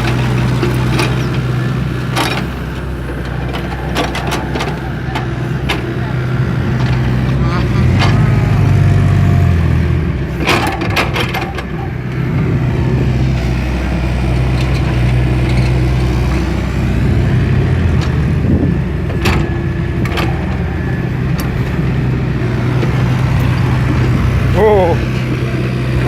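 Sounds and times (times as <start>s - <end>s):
large vehicle engine running: 0.0s - 26.0s.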